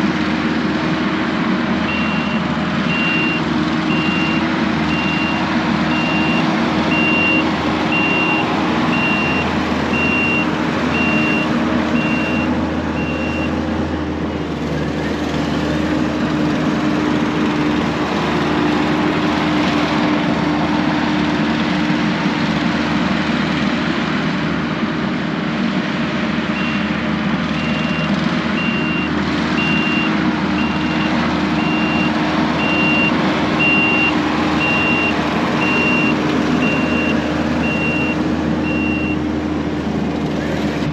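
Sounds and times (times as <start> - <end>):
diesel earthmover engine: 0.0 - 40.9
reversing alarm beeping: 1.9 - 13.6, 26.6 - 27.0, 27.6 - 39.2.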